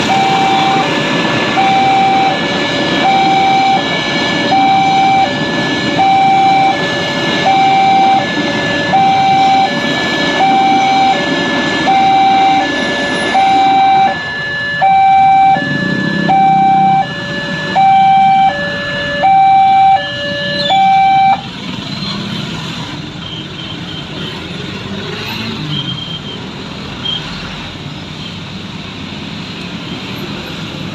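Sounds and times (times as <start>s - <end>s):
railroad crossing two-tone alarm: 0.0s - 24.3s
low rumble of road traffic: 0.0s - 30.9s.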